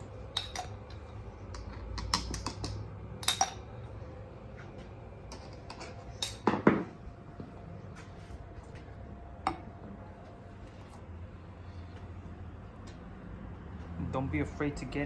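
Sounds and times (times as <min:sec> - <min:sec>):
clicks and clinks of tools: 0:01.6 - 0:03.6.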